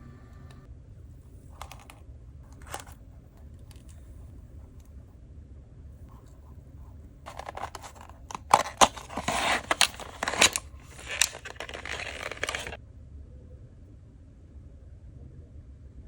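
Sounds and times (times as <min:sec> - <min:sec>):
packaging rustling: 0:01.6 - 0:03.0, 0:07.3 - 0:12.8
plastic packaging clicks and snaps: 0:07.3 - 0:12.8.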